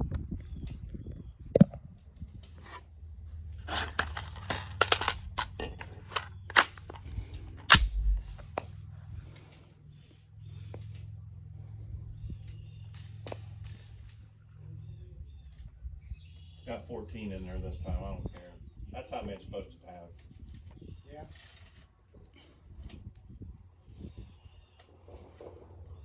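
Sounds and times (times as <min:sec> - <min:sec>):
insect trill: 0:00.5 - 0:26.0
cartridges clicking into magazine: 0:03.9 - 0:08.5
low steady hum: 0:05.6 - 0:15.4.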